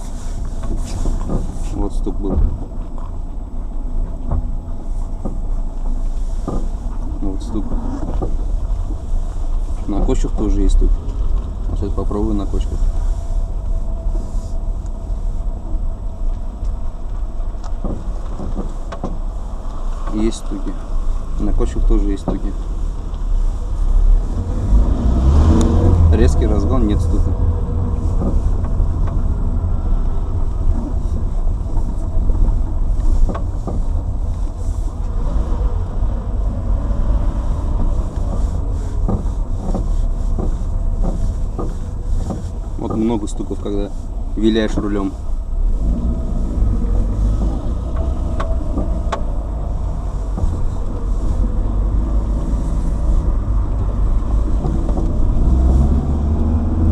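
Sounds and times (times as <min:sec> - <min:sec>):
road and engine rumble: 0:00.0 - 0:56.9
suspension knocks: 0:16.7 - 0:23.3, 0:24.3 - 0:56.9.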